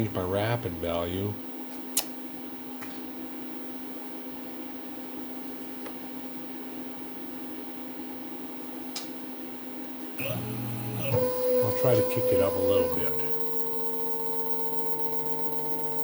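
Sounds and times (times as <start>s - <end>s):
milling machine hum and hiss: 10.2s - 16.0s.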